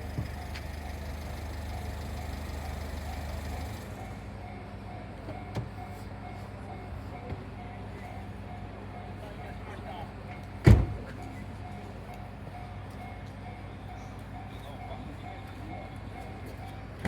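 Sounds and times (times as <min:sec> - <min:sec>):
vehicle engine hum: 0:00.0 - 0:04.4.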